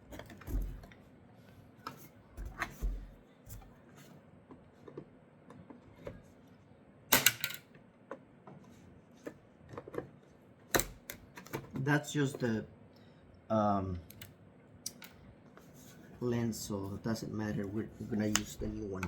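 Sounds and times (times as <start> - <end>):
plastic clicks and cracking snaps: 14.1 - 15.2.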